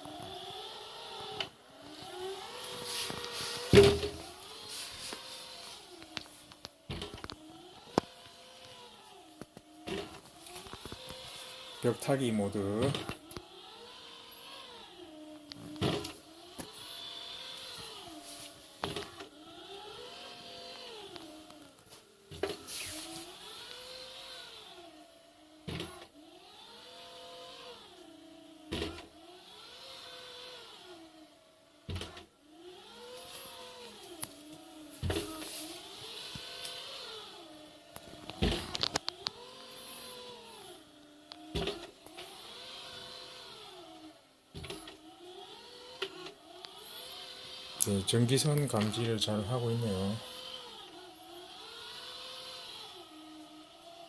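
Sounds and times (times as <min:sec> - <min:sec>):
robot motors whining: 0:00.0 - 0:54.0
thump: 0:03.7 - 0:04.2.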